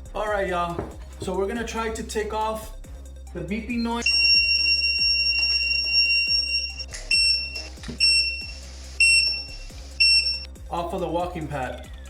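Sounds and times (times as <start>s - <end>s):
background music with beat: 0.0s - 12.0s
high piercing beeps: 4.0s - 10.5s.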